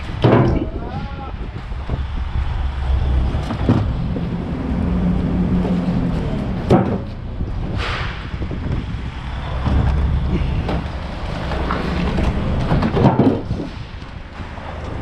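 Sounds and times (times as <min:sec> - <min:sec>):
low engine rumble: 0:00.0 - 0:15.0
scrap metal knocking and clattering: 0:05.5 - 0:08.5, 0:09.5 - 0:14.2.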